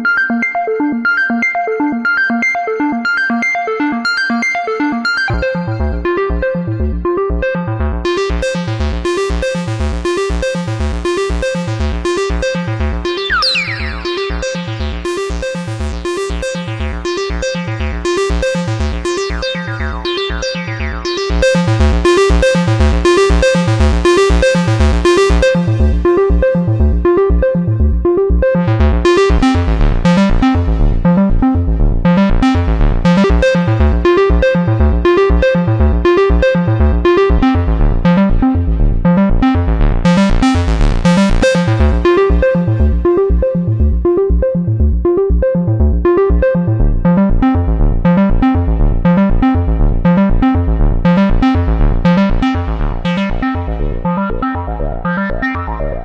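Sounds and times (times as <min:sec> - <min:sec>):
synthesizer bass sequence: 0:02.9 - 0:56.0
sweeping high synth tones: 0:13.2 - 0:15.7.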